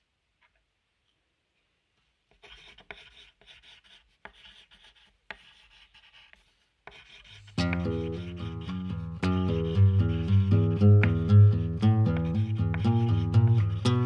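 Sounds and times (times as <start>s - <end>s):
scratchy rubbing strokes: 2.3s - 14.0s
sharp taps: 10.9s - 11.4s.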